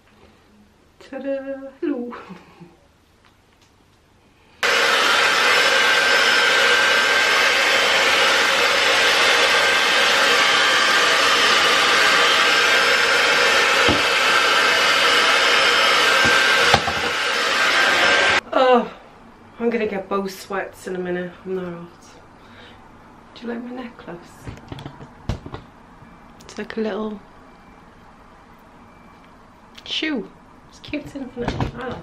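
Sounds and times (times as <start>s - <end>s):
hair dryer running: 4.6s - 18.4s.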